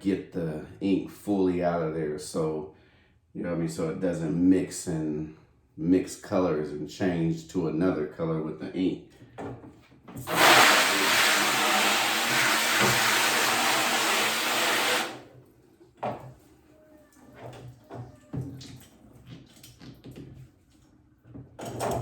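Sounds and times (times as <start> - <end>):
water spray rinsing: 10.2 - 15.2.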